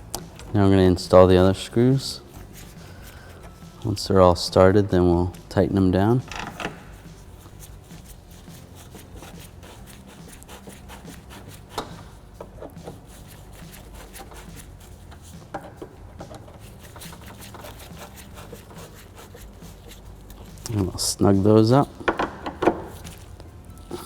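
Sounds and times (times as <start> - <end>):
faint handling noise: 19.4 - 24.0.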